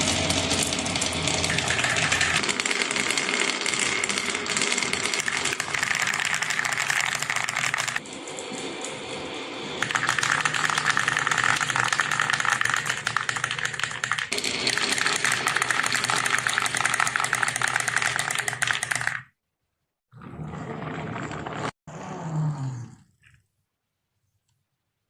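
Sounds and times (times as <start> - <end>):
marbles rattling down a track: 0.0 - 9.1, 9.8 - 19.3.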